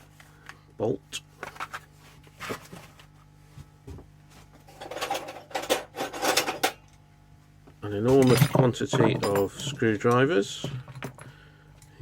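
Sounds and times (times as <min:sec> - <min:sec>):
metal tools clinking on table: 0:08.1 - 0:09.9.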